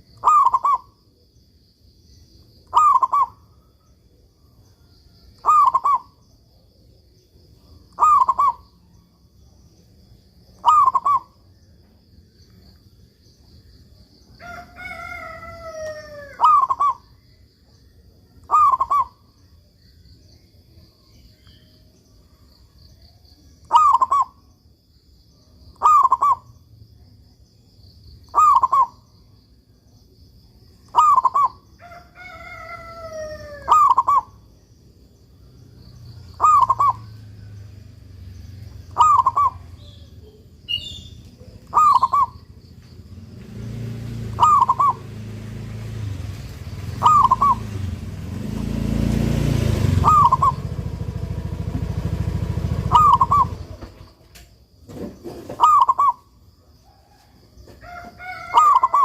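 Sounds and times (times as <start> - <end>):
dove cooing: 0.0 - 1.0, 2.6 - 3.5, 5.4 - 6.2, 7.9 - 8.7, 10.6 - 11.4, 14.5 - 17.1, 18.4 - 19.2, 23.7 - 24.4, 25.7 - 26.6, 28.3 - 29.0, 30.9 - 34.5, 36.3 - 37.4, 38.9 - 42.4, 44.2 - 45.5, 46.9 - 47.9, 49.6 - 54.2, 55.0 - 56.3, 56.9 - 59.0.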